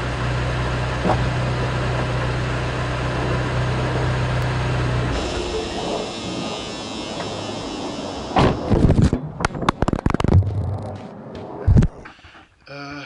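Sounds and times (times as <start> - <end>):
steady low buzz from engine bay: 0.0 - 9.0.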